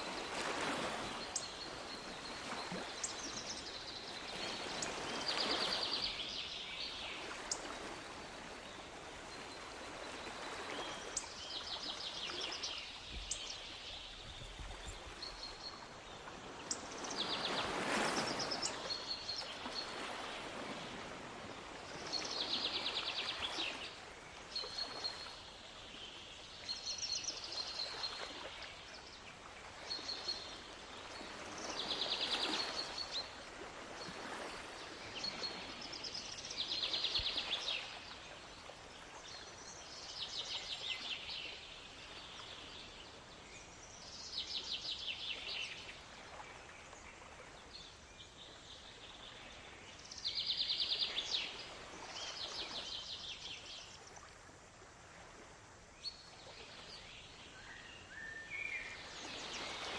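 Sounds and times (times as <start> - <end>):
waves washing in: 0.0 - 26.2
small birds trilling and chirping: 1.1 - 7.8, 10.8 - 20.4.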